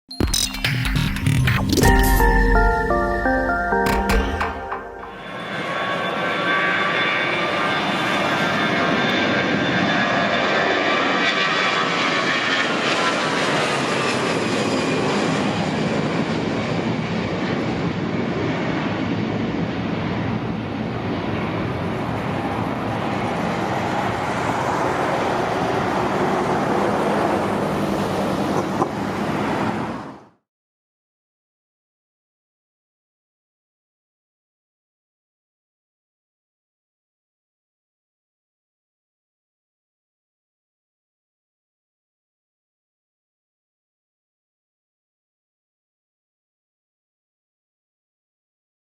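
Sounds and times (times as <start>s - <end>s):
jet airliner passing: 5.2s - 30.4s.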